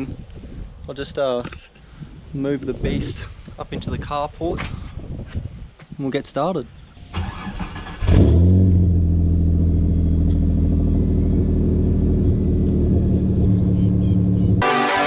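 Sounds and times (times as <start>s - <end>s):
car engine starting and idling: 7.1s - 8.4s.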